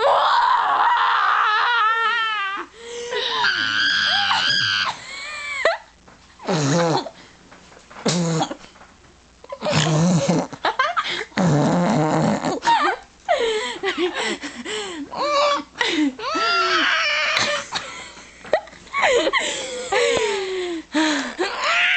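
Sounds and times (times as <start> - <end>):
girls squealing: 0.0 - 5.7, 15.3 - 17.7.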